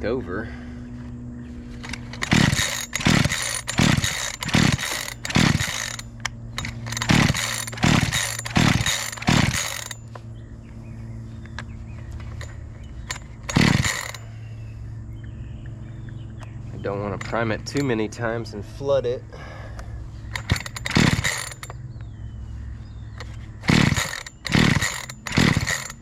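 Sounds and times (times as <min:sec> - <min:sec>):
chainsaw recoil starter pulls: 0:01.8 - 0:10.2, 0:12.2 - 0:14.3, 0:17.0 - 0:18.1, 0:20.3 - 0:21.8, 0:23.2 - 0:26.0.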